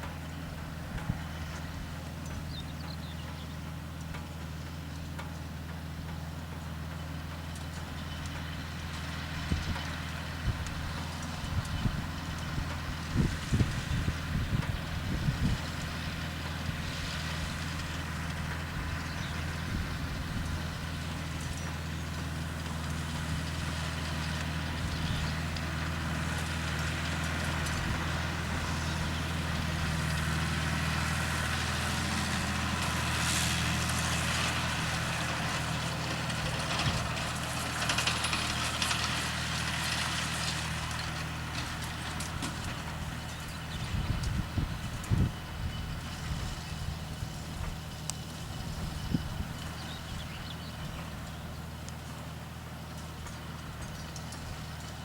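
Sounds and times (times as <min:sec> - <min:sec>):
farm machine engine running: 0:00.0 - 0:55.0.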